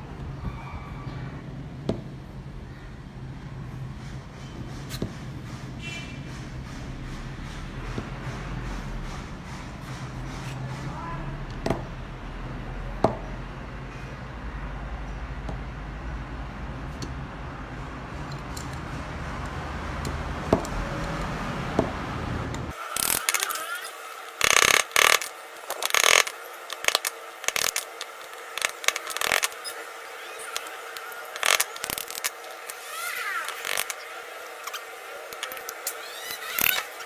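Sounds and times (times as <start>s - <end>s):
metal parts scraping and clicking: 22.7s - 37.0s.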